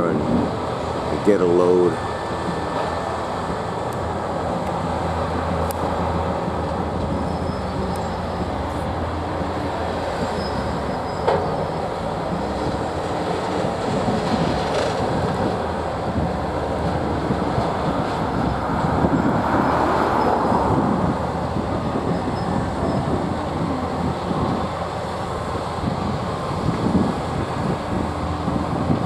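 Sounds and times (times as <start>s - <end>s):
diesel trucks running: 0.0s - 29.0s.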